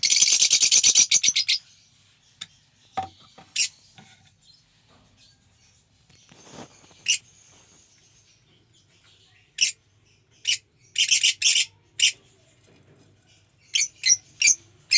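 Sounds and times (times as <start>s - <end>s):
bird chicks high sharp calls: 0.0s - 1.8s, 5.4s - 12.5s, 13.2s - 14.9s.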